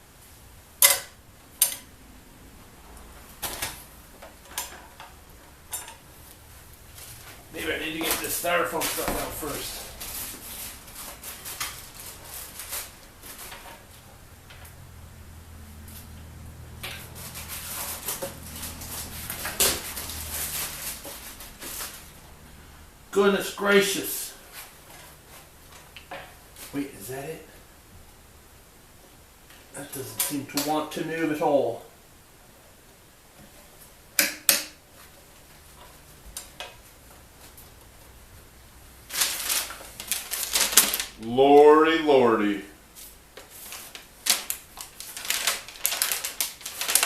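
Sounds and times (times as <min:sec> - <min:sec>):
packing material rubbing and scraping: 0:06.9 - 0:13.9, 0:17.0 - 0:22.2, 0:39.0 - 0:41.3, 0:43.0 - 0:47.0.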